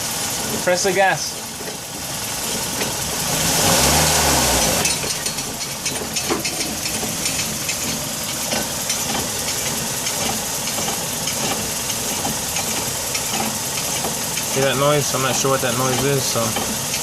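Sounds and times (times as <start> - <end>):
car engine running: 0.0 - 17.0
metallic clinks and knocks: 4.8 - 17.0.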